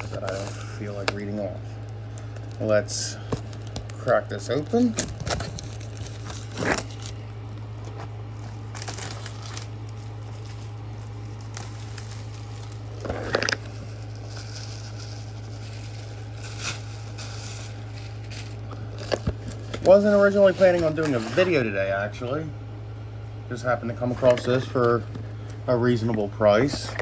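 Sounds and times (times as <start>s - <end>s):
plastic wrap rustling: 0.0s - 21.7s
plastic wrap crinkling rips: 3.4s - 21.6s.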